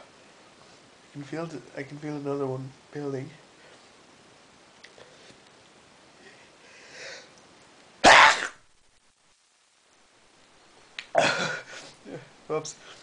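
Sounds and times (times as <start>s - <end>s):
intake of breath: 6.2s - 7.4s
man sneezing: 8.0s - 8.6s.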